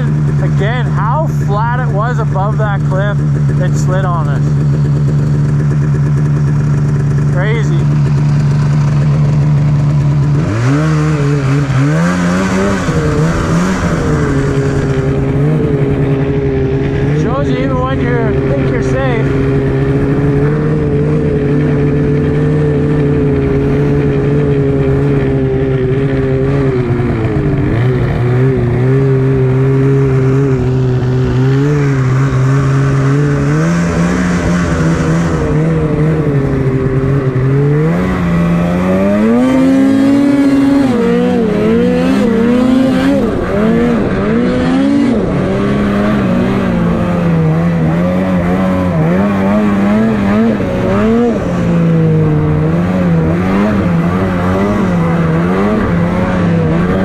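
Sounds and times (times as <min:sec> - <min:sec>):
snowmobile engine revving: 0:00.0 - 0:57.0.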